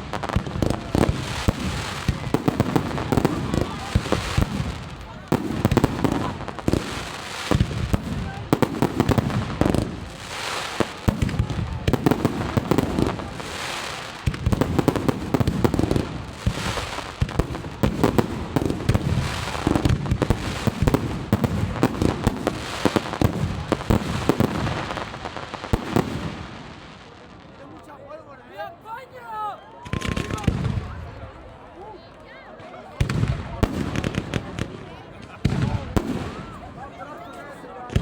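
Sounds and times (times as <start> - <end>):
firework crackling: 0.0 - 27.6, 33.0 - 36.9.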